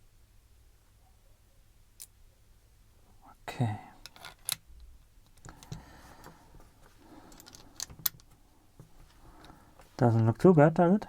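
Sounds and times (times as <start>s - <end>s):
padlock parts clicking: 4.0s - 5.8s, 7.3s - 8.4s.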